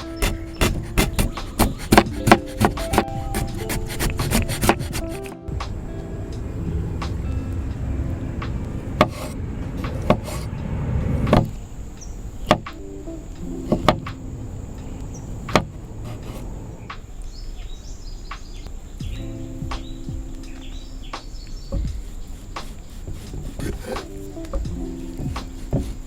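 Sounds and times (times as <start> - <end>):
utensils knocking and clicking: 0.0 - 5.3
low rumbling noise: 5.4 - 19.5.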